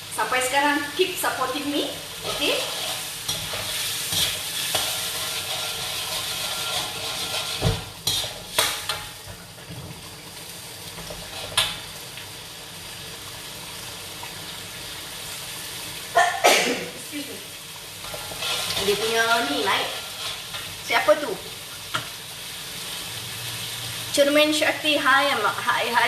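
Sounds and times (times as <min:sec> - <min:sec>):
paste sizzling in hot oil: 0:00.0 - 0:26.0
spatula stirring: 0:02.1 - 0:09.2, 0:18.0 - 0:20.7.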